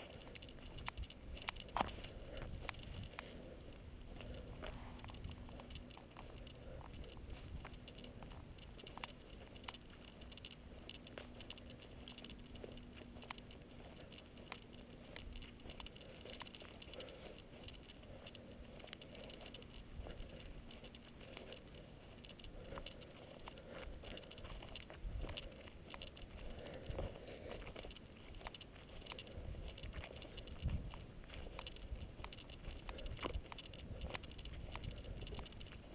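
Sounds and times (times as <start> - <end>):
faint low hum: 0.0 - 35.9
footsteps on dirt trail: 0.0 - 35.9.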